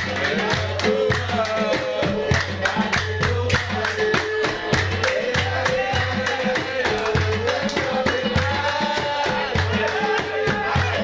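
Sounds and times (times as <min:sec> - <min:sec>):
hand drum and percussion beat: 0:00.0 - 0:11.0.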